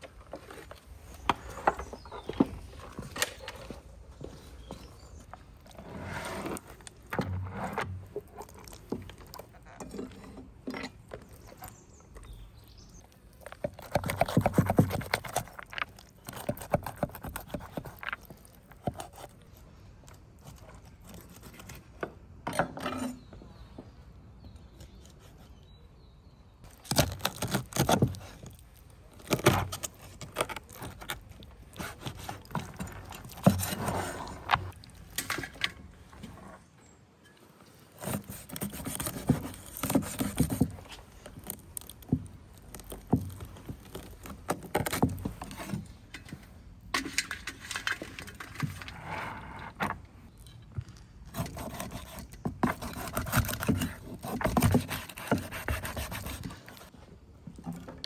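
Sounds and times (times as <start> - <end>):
food preparation clinks and scrapes: 26.7 - 49.6.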